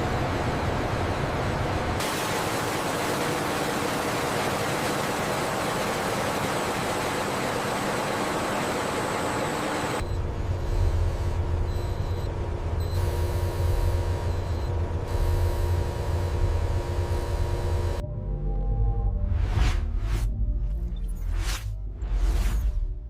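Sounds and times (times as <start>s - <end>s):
machinery low rumble: 0.0s - 23.0s.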